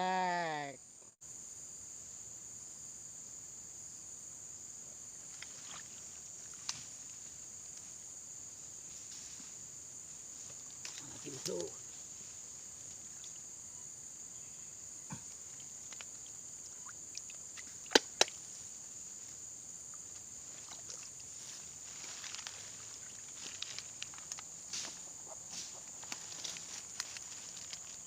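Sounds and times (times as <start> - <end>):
insects droning: 0.0 - 28.0
light rustling and ticks: 20.1 - 28.0.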